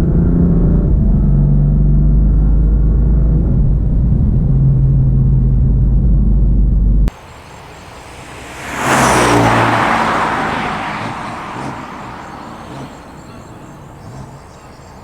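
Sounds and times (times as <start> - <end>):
car driving past: 7.1 - 15.0.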